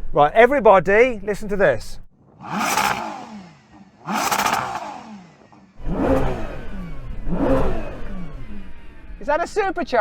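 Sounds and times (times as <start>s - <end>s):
car engine revving: 2.3s - 9.2s.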